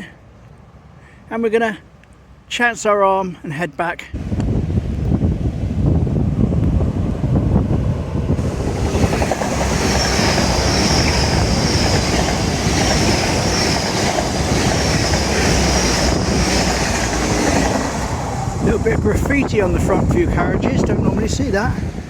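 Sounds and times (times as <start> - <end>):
passenger train passing: 4.2 - 22.0
thin high whine: 8.4 - 17.6.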